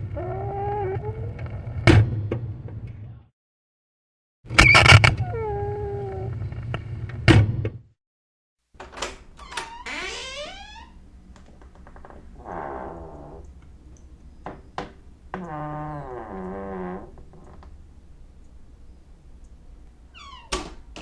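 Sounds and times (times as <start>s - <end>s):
door hinges creaking: 4.5s - 5.2s, 8.8s - 13.6s, 14.4s - 17.7s, 20.2s - 21.0s.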